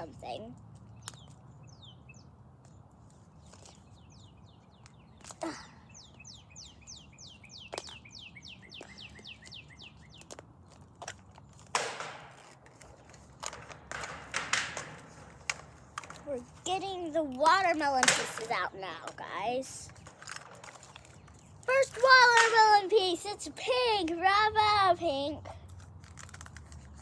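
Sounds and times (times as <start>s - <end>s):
songbird chirping: 0.0s - 11.5s
crinkly packaging rustling: 14.9s - 23.2s, 25.6s - 27.0s.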